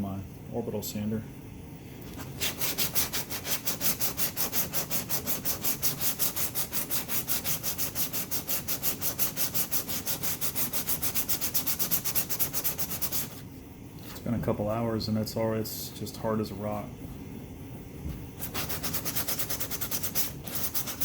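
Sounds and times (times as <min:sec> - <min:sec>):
sanding pad rasping on epoxy: 0:02.2 - 0:13.4, 0:18.4 - 0:21.0.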